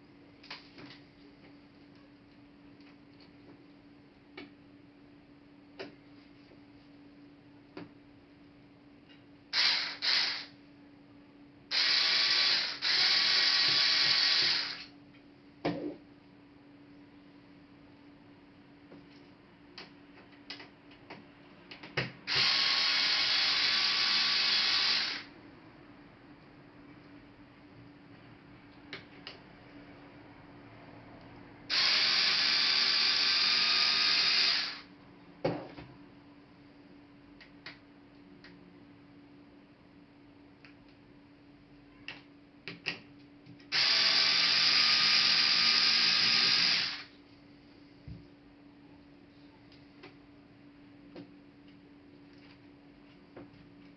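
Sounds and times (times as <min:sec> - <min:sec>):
hand tool ratcheting whirr: 0:09.6 - 0:10.5, 0:11.7 - 0:14.9, 0:22.3 - 0:25.3, 0:31.7 - 0:34.9, 0:43.7 - 0:47.1.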